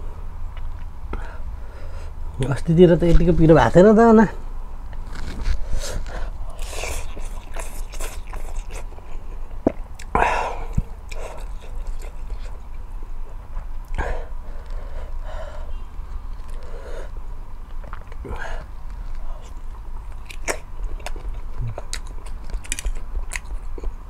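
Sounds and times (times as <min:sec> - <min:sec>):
person chewing noodles: 0:05.0 - 0:24.0.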